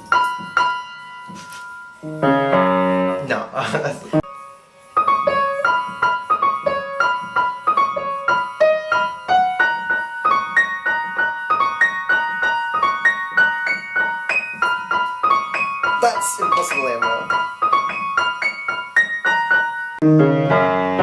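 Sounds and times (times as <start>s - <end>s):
piano playing single notes: 0.0s - 3.2s.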